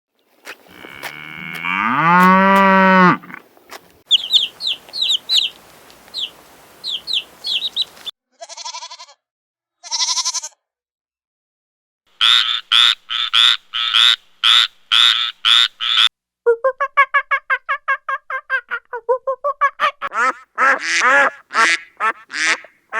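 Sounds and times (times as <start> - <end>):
low cow-like moo: 0.7 - 3.4
high chirps: 4.1 - 8.1
rapid evenly spaced calls: 4.1 - 8.1, 12.2 - 16.1, 19.8 - 22.9.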